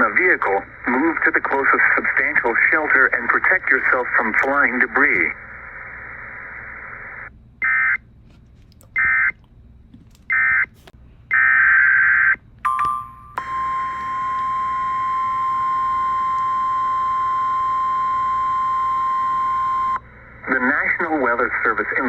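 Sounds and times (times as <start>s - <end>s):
steady high alert tone: 12.7s - 18.1s.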